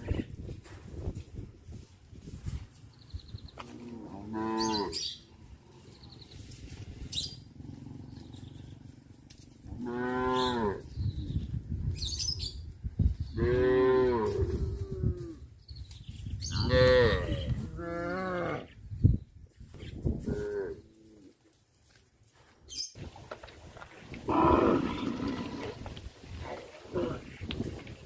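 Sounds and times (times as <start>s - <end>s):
cattle mooing: 3.7s - 5.0s, 9.7s - 10.8s, 24.3s - 25.8s.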